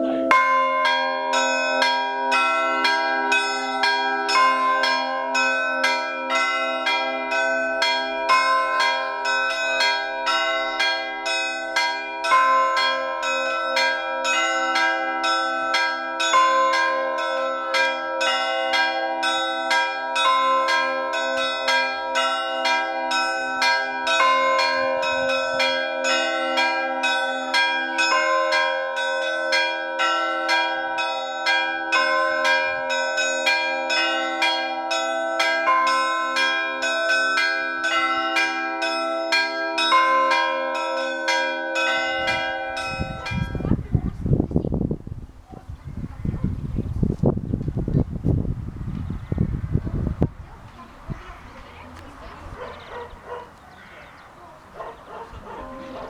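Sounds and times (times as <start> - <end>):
heavy bell stroke: 0.0 - 43.6
small bells struck rapidly: 0.0 - 43.7
humming large bells: 0.0 - 45.0, 51.4 - 56.0.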